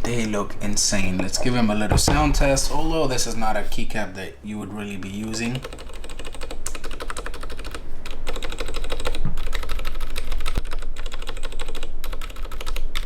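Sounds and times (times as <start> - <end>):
mechanical keyboard keystroke clacks: 5.0 - 13.0.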